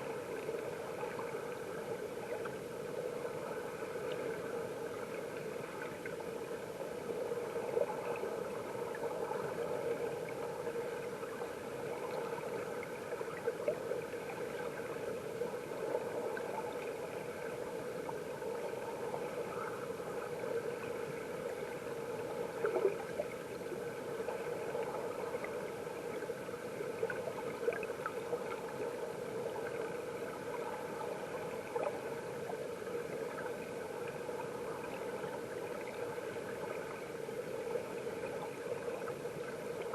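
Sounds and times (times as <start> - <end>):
underwater stream rushing: 0.0 - 39.9.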